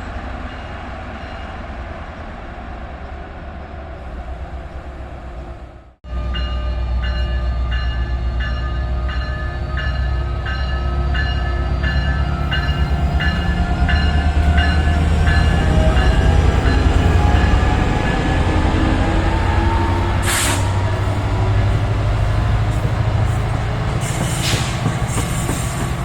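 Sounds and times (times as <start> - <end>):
train rumble: 0.0 - 26.0
train bell ringing: 6.1 - 22.8.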